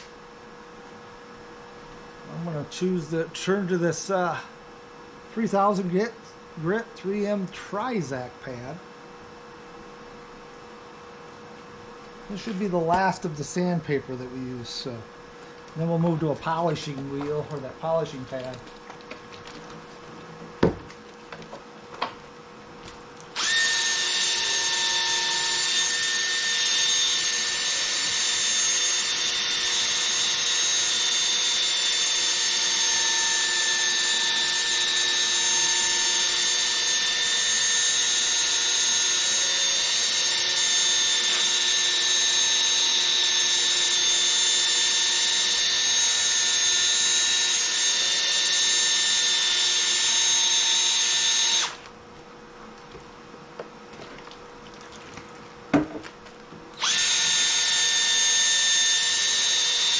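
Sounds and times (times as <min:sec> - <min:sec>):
cordless drill sanding plastic: 0:23.4 - 0:51.8, 0:56.8 - 0:59.9.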